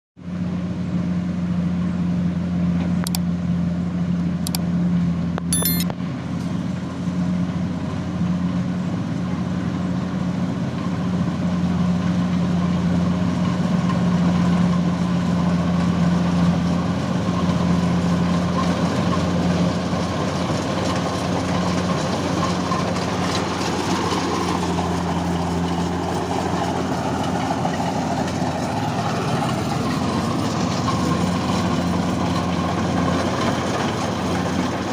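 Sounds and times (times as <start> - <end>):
sharp clicks: 3.0 - 3.2, 5.4 - 6.0
farm machine engine running: 5.5 - 34.9.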